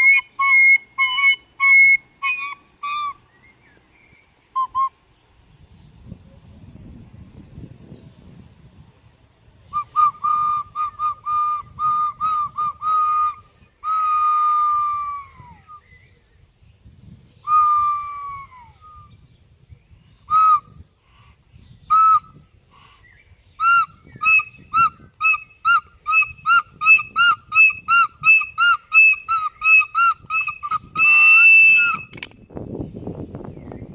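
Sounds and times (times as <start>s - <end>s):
flute playing: 0.0s - 3.2s, 4.6s - 4.9s, 9.8s - 15.8s, 20.3s - 20.6s, 23.6s - 32.3s.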